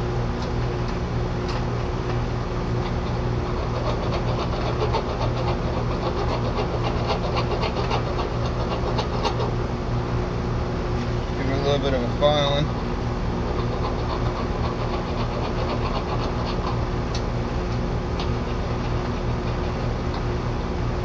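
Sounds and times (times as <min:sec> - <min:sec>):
heat pump unit humming: 0:00.0 - 0:21.0
hand tool filing copper pipe: 0:03.0 - 0:09.6, 0:13.4 - 0:16.9.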